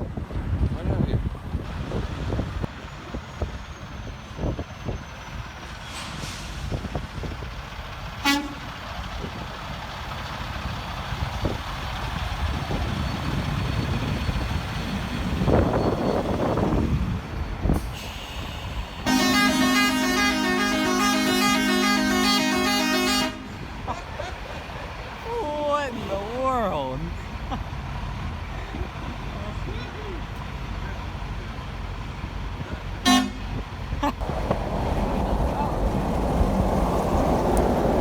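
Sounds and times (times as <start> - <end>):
trucks going by: 0.0 - 38.0
highway traffic rushing past: 1.4 - 38.0
truck horn chord: 8.2 - 8.7, 19.1 - 23.8, 33.0 - 33.6.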